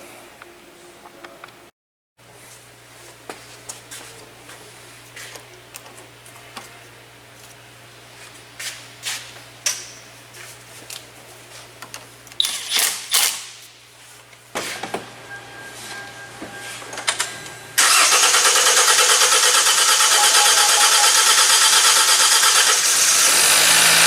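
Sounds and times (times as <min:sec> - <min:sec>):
starter motor cranking engine: 0:17.8 - 0:24.0.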